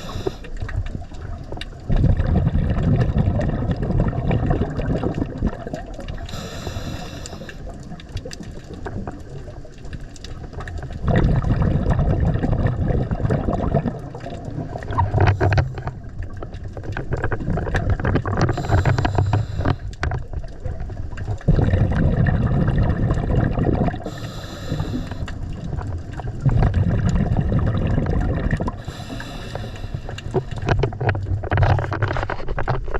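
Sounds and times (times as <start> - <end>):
hissing inhalations: 0.0 - 0.5, 6.3 - 7.7, 18.5 - 19.9, 24.0 - 25.4, 28.8 - 30.6
bubbling exhalations: 0.0 - 9.6, 10.6 - 32.5.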